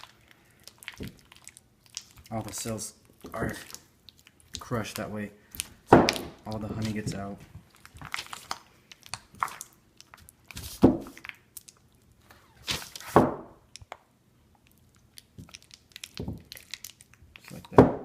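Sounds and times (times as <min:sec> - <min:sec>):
honeycomb being smashed in a bowl: 0:05.5 - 0:07.0, 0:07.9 - 0:11.7, 0:15.2 - 0:18.0.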